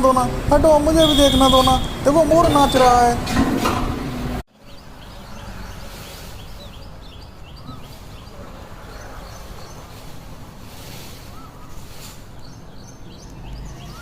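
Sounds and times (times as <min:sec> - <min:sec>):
low outdoor background noise: 0:00.0 - 0:14.0
small birds chirping: 0:04.5 - 0:14.0.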